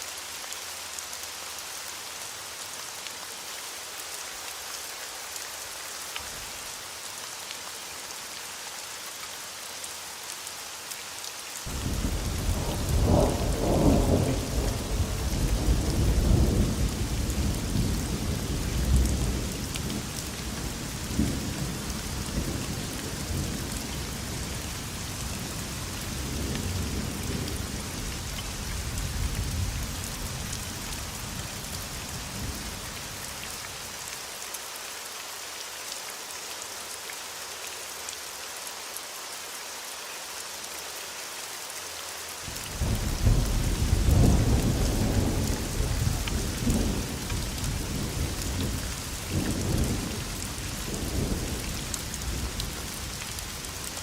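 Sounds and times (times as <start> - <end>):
rain hissing: 0.0 - 54.0
thunder rumbling: 11.7 - 19.4, 42.8 - 50.2.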